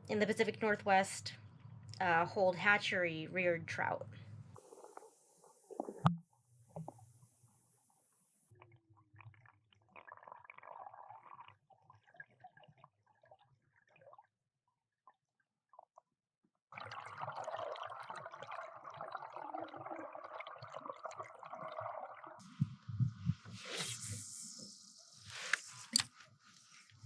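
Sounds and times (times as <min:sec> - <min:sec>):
water gurgling and crackling: 0:04.6 - 0:07.5, 0:08.5 - 0:16.0, 0:16.8 - 0:27.0.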